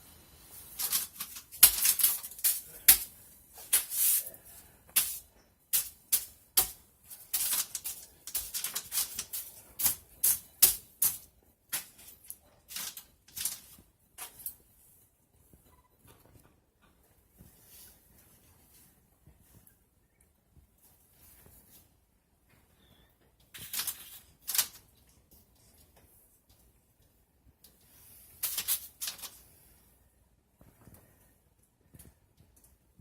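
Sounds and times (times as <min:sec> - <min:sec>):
scratching crinkling bursts: 0:00.5 - 0:15.0, 0:23.4 - 0:26.0, 0:27.9 - 0:29.7.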